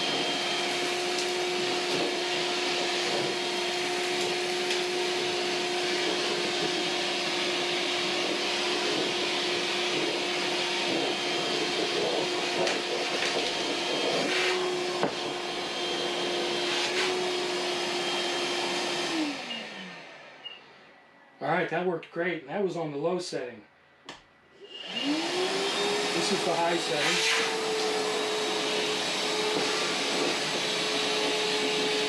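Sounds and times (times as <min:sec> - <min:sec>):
vacuum motor whine: 0:00.0 - 0:21.4, 0:24.6 - 0:32.0.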